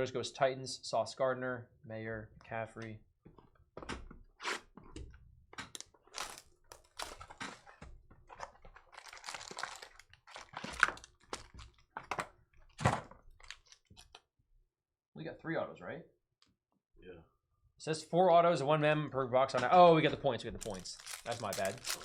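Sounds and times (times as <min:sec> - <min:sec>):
trading cards flipped and rustling: 0:05.7 - 0:07.6, 0:20.5 - 0:22.0.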